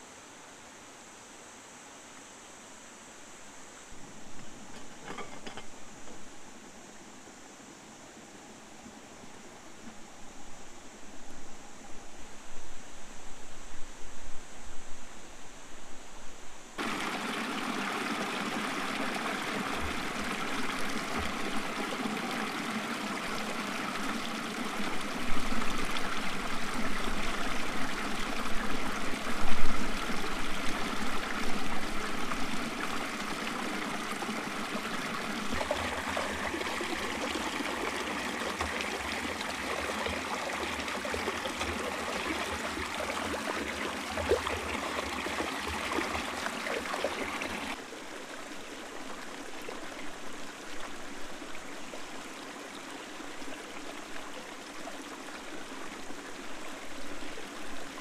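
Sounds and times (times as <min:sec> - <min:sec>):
running water rushing: 0:16.8 - 0:58.0.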